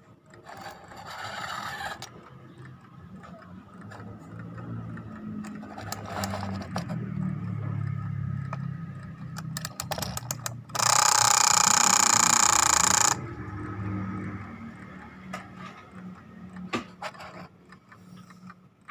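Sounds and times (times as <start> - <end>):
clockwork clicking and ratcheting: 0.3 - 18.9
alarm clock bell ringing: 10.8 - 13.3.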